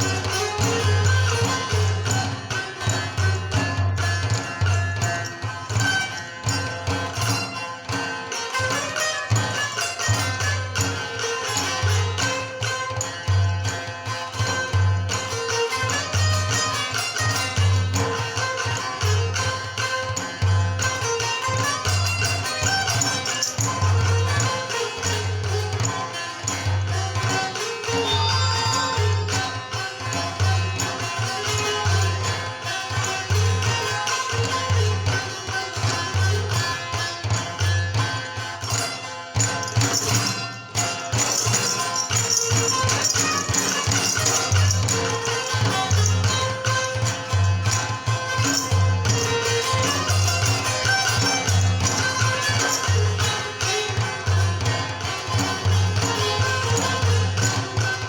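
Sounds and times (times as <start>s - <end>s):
low percussion beat: 0.0s - 38.2s
sitar playing folk tune: 0.0s - 58.0s.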